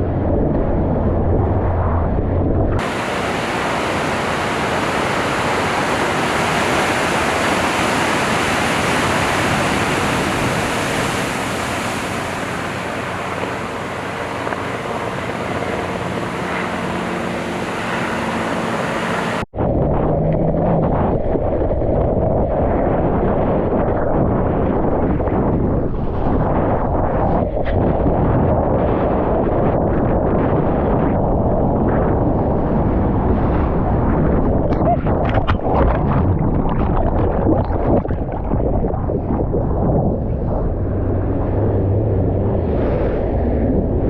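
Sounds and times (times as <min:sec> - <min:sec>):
wind on microphone: 0:00.0 - 0:44.0
surf roaring: 0:02.8 - 0:19.5
muffled low rumble: 0:33.9 - 0:44.0.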